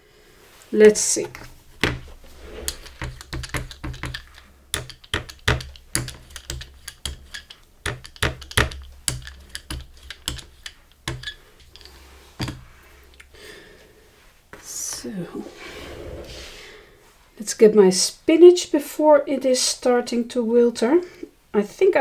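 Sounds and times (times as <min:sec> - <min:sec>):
paint tools clicking on palette: 0:01.2 - 0:13.4.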